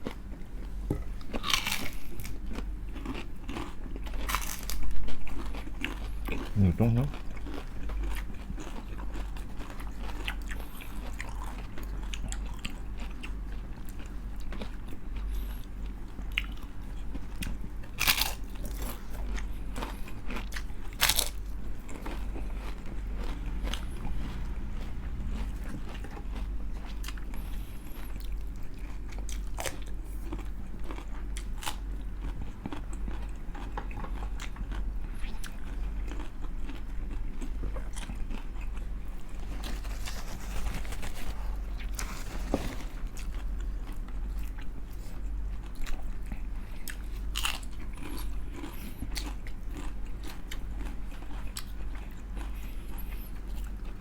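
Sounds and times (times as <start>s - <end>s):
crunching and chewing crispy food: 0.0s - 54.0s
steady low hum: 0.0s - 54.0s.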